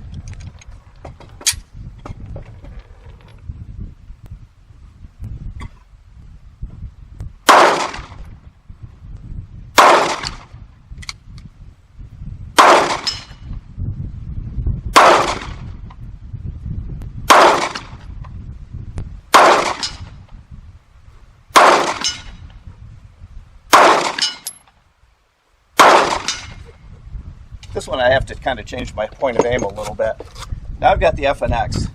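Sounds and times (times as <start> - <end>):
pistol shots with echo: 7.4 - 8.2, 9.8 - 10.5, 12.6 - 13.3, 15.0 - 15.6, 17.3 - 18.0, 19.3 - 20.0, 21.5 - 22.4, 23.7 - 24.5, 25.8 - 26.6.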